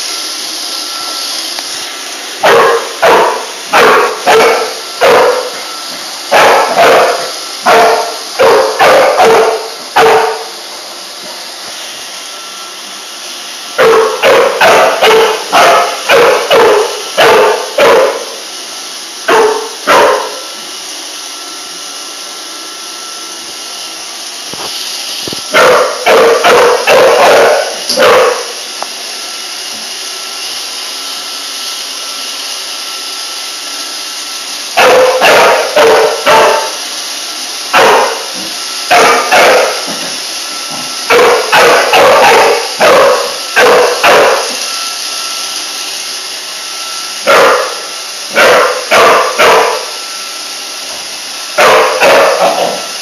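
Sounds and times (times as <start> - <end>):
robot vacuum humming: 0.0 - 53.0
dog barking: 2.4 - 5.6, 6.3 - 10.5, 13.8 - 18.4, 19.3 - 20.5, 25.5 - 28.6, 34.8 - 36.8, 37.7 - 38.3, 38.9 - 40.0, 41.1 - 44.6, 47.2 - 50.0, 51.6 - 52.9.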